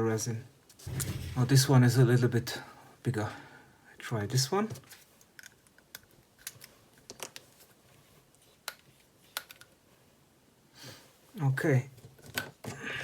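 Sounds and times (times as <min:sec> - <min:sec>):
plastic parts clicking and tapping: 0:05.2 - 0:07.5, 0:08.6 - 0:09.7.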